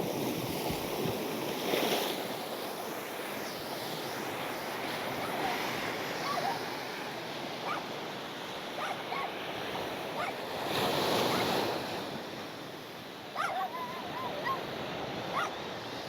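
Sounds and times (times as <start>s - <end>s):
small waves washing onto beach: 0.0s - 16.0s
dog whining: 6.2s - 6.6s, 8.8s - 9.3s, 10.2s - 10.4s, 11.2s - 11.5s, 13.4s - 14.7s, 15.3s - 15.6s.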